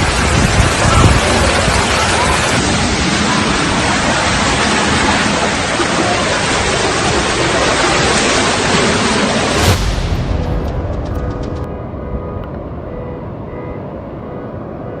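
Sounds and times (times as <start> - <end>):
running floodwater: 0.0 - 10.5
rainstorm rushing: 0.0 - 13.0.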